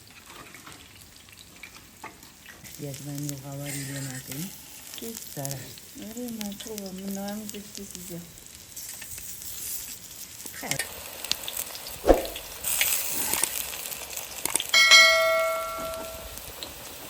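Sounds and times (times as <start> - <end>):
food sizzling over fire: 0.0 - 17.0
metal object ringing: 14.8 - 16.4.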